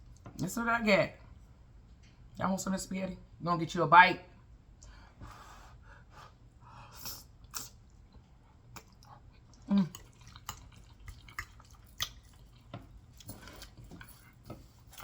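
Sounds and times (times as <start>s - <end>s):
mouth clicks and smacks: 7.0s - 8.0s, 8.7s - 12.6s
wet eating sounds: 7.0s - 15.0s.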